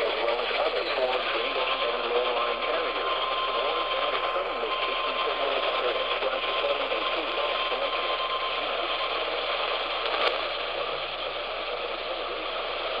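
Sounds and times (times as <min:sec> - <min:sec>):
radio static hiss: 0:00.0 - 0:13.0
faint steady whistle: 0:01.0 - 0:09.7.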